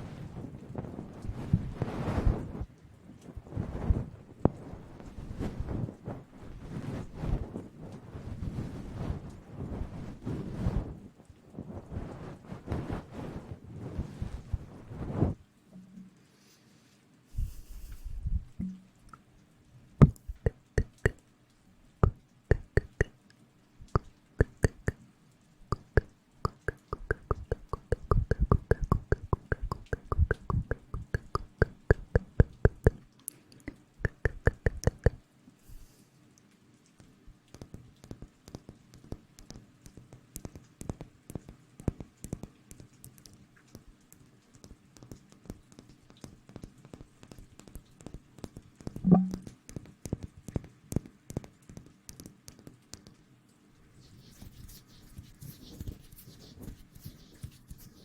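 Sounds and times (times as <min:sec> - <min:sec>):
sharp taps and clicks: 0:20.0 - 0:21.2, 0:22.0 - 0:23.2, 0:23.8 - 0:25.0, 0:25.7 - 0:35.2, 0:37.0 - 0:53.2.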